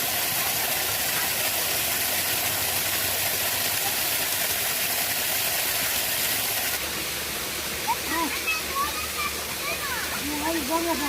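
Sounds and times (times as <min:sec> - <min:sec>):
water gushing from pipe: 0:00.0 - 0:11.0.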